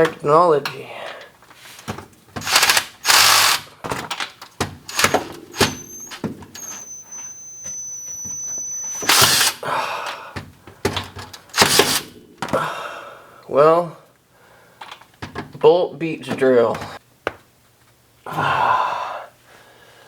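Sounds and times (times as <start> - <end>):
power drill clattering: 2.4 - 3.7, 4.9 - 9.6, 11.6 - 12.1
high-pitched drill whine: 2.5 - 3.6, 4.9 - 9.6.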